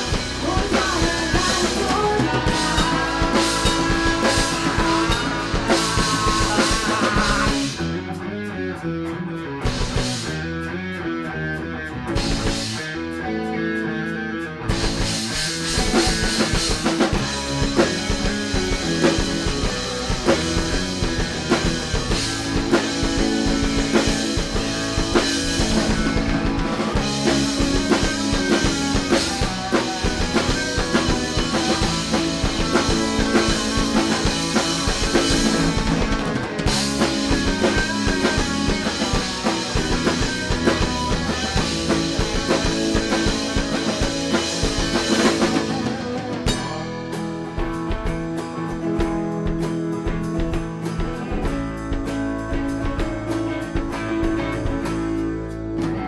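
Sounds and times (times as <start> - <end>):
drum kit: 0.0 - 56.0
guitar: 0.0 - 56.0
rock band playing live: 0.0 - 56.0.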